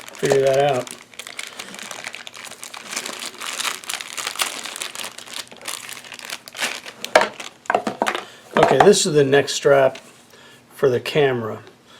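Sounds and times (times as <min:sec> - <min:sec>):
plastic packaging crinkling: 0:00.0 - 0:09.0.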